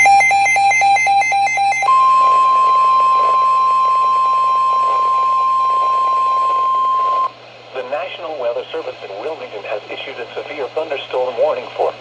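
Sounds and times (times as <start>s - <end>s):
rapid two-pitch electronic beeping: 0.0s - 7.3s.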